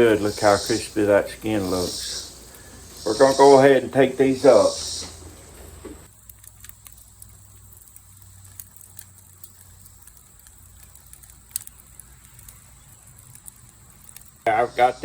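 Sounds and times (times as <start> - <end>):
tongs clicking and rattling on grate: 3.9 - 14.7.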